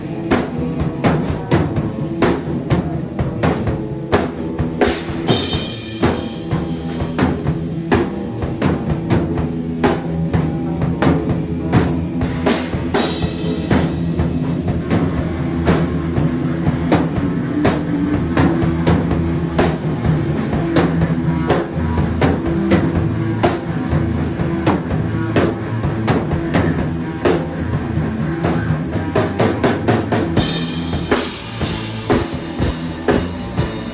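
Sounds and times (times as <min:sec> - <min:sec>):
drum kit beat: 0:00.0 - 0:33.9
low bass notes: 0:05.2 - 0:33.9.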